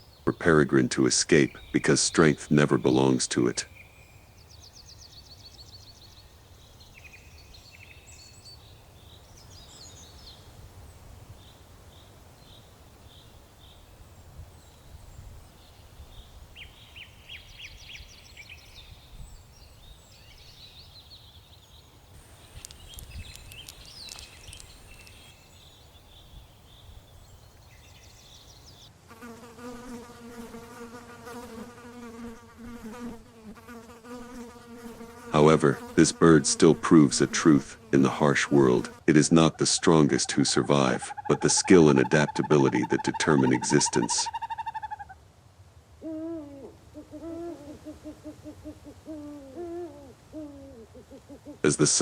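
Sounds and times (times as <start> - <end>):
fly buzzing: 22.2 - 25.3, 29.1 - 44.2
high chirps and trills: 39.1 - 45.2.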